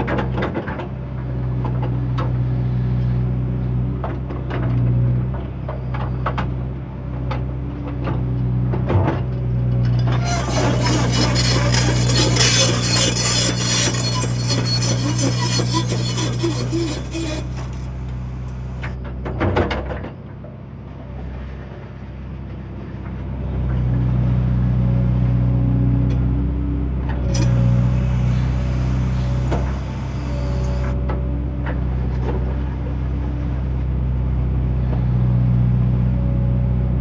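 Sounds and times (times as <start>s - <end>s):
excavator diesel engine running: 9.7s - 19.0s, 27.3s - 32.0s.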